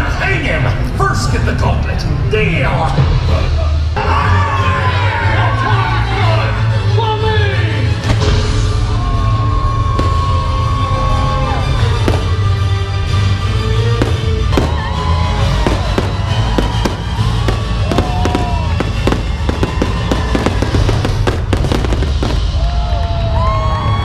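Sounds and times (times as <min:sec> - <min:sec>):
loud show music: 0:02.1 - 0:24.0
fireworks bangs and crackles: 0:08.0 - 0:23.4.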